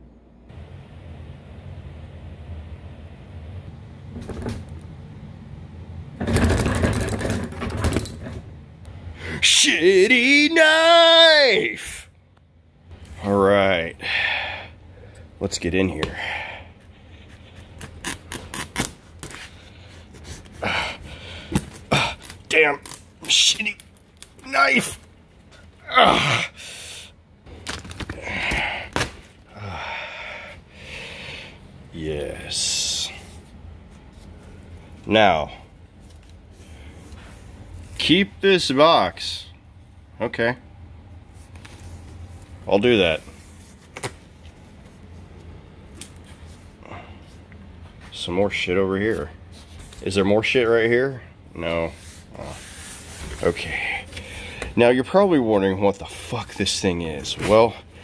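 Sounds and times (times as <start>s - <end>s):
hard objects rattling and clattering: 6.2s - 8.4s
knife cutting tape and cardboard: 17.3s - 19.5s
man groaning: 25.8s - 26.6s.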